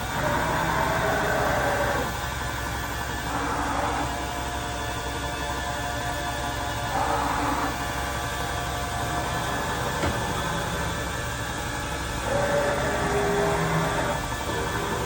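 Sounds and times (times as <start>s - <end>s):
faint whining tones: 0.0s - 15.0s
milling machine whirring: 0.0s - 15.0s.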